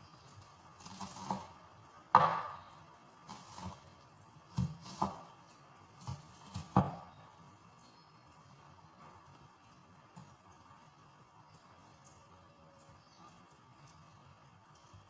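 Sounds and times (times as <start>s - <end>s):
knife chopping onion on board: 0.8s - 2.6s, 4.5s - 5.4s, 6.0s - 7.1s.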